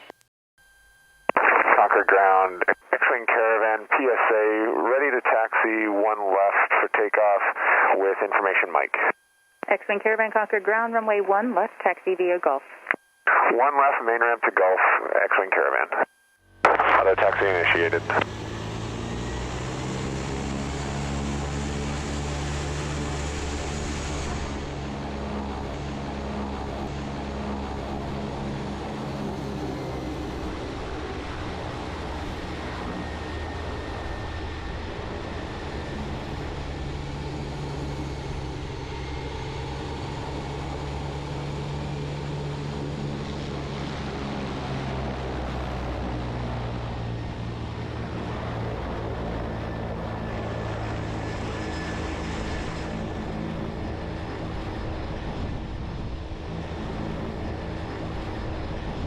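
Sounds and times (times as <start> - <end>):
faint high whine: 0.1 - 19.8
turboprop engine humming: 1.2 - 59.0.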